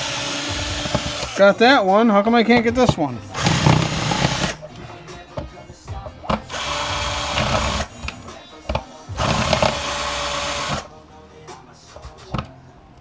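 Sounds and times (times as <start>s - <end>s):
power drill running: 0.0s - 1.5s, 3.3s - 4.6s, 6.4s - 8.2s, 9.2s - 10.9s.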